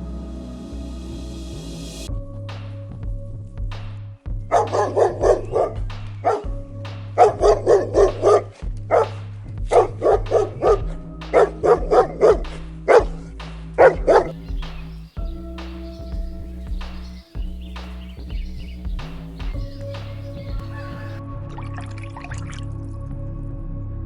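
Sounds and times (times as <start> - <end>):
background music: 0.0 - 24.0
dog barking: 4.5 - 6.4, 7.2 - 9.1, 9.7 - 13.1, 13.8 - 14.3.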